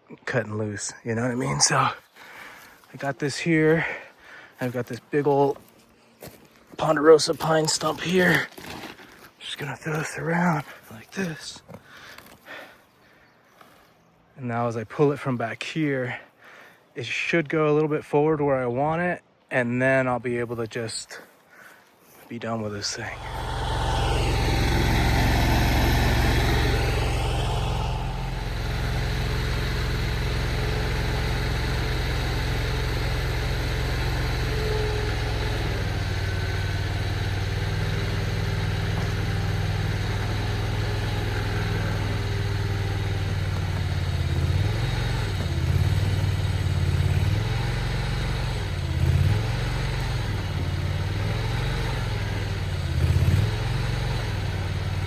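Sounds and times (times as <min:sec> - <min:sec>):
skid steer engine running: 0:23.0 - 0:55.0.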